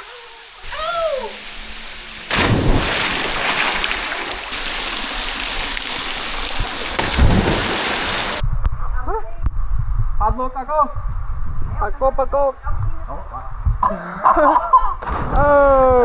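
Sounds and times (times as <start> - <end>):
waterfall rushing: 0.0 - 8.4.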